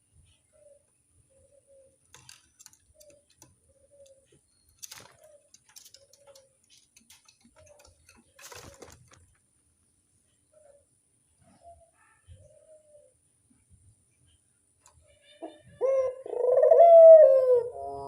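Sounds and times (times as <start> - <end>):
clicks and crackles: 2.0 - 9.5
dove cooing: 15.4 - 18.0.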